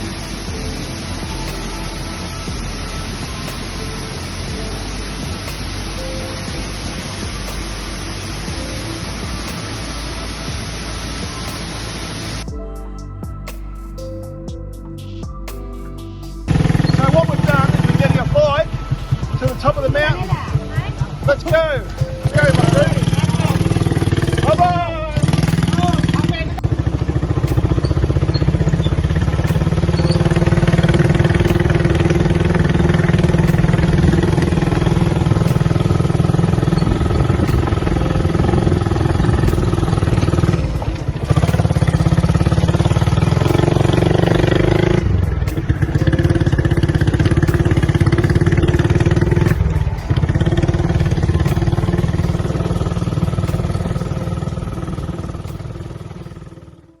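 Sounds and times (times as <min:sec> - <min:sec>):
motorcycle engine running: 0:16.5 - 0:57.0.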